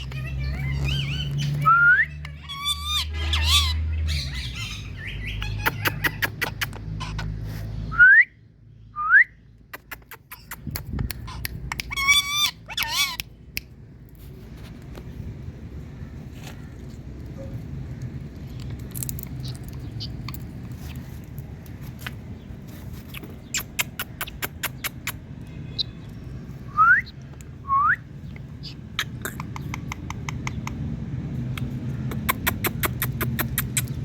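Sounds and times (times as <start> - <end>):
parrot squawking: 0.0 - 7.4, 11.2 - 13.4.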